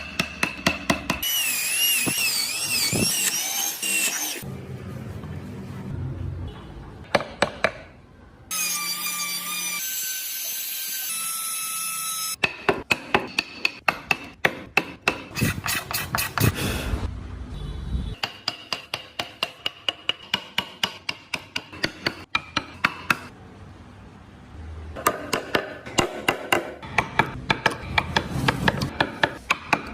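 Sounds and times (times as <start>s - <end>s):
mallet tapping wood chisel: 0.0s - 1.2s, 18.2s - 23.3s, 25.0s - 29.9s.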